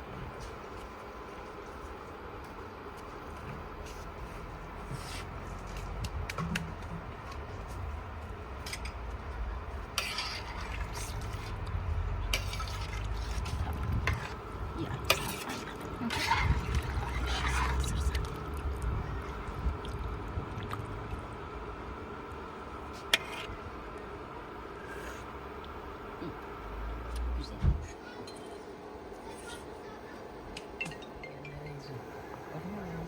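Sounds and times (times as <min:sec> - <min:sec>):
steady low rumble: 0:05.4 - 0:22.9
liquid splashing and stirring: 0:09.9 - 0:21.2, 0:23.0 - 0:23.5.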